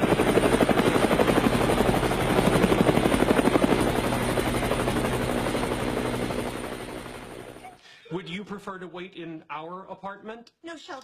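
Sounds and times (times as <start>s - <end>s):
helicopter rotor chop: 0.0s - 7.8s.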